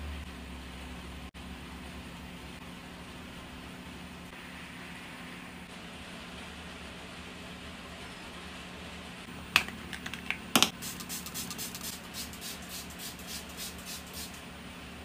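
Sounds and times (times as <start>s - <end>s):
steady low hum: 0.0s - 15.0s
makeup items clicking: 9.6s - 10.7s.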